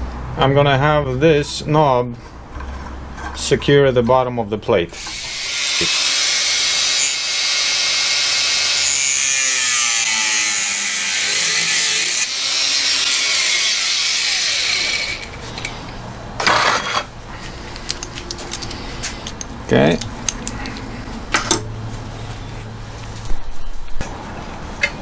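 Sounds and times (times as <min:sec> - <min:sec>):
power tool cutting steel: 0:05.0 - 0:15.8.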